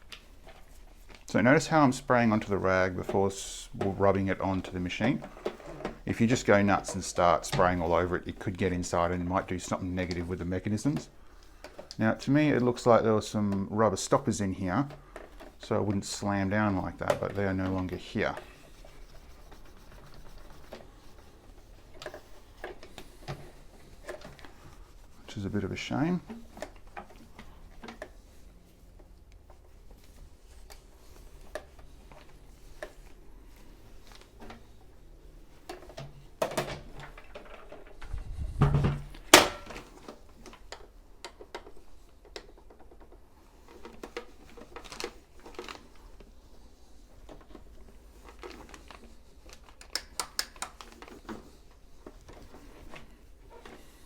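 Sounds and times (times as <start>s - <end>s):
rag rubbing: 14.0s - 28.5s
plastic and metal clicks and knocks: 35.6s - 45.9s
loud thump: 38.4s - 39.6s.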